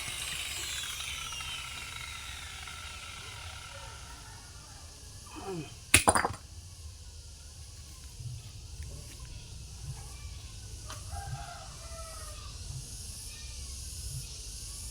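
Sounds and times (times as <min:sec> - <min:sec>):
steady low hum: 0:00.0 - 0:06.0
faint chicken clucks: 0:10.8 - 0:12.6.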